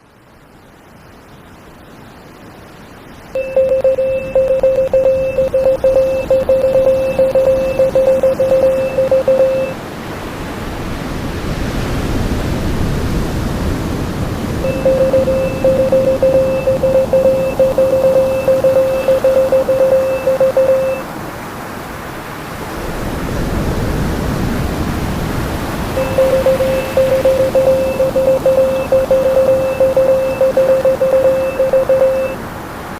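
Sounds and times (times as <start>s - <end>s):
wavering alarm tone: 3.4s - 9.8s, 14.6s - 21.0s, 26.0s - 32.4s
rushing water: 3.4s - 32.9s.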